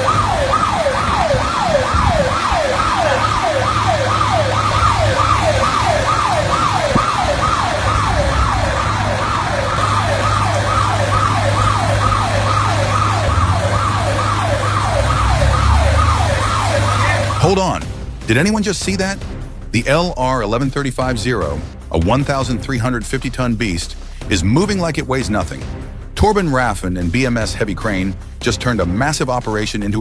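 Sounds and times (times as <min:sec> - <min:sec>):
electronic siren whooping: 0:00.0 - 0:17.8
engine humming: 0:00.0 - 0:30.0.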